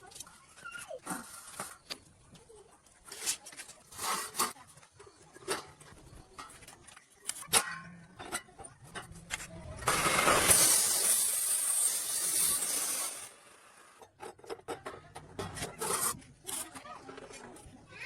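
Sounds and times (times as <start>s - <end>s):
arc welder hissing crackle: 9.9s - 13.8s.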